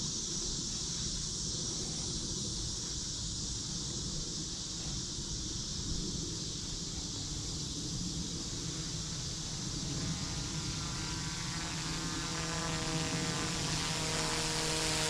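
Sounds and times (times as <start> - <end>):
rc helicopter motor whine: 8.3 - 15.0.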